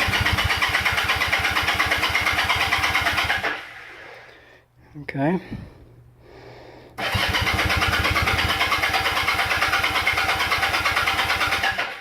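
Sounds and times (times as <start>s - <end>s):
motorcycle engine cranking on starter: 0.0s - 3.9s, 7.0s - 12.0s.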